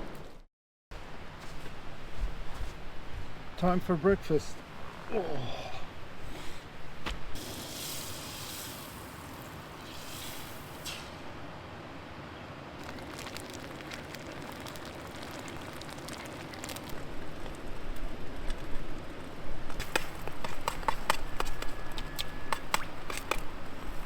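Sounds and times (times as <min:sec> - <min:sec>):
eggs hissing in pan: 0:07.4 - 0:11.2, 0:12.8 - 0:17.0.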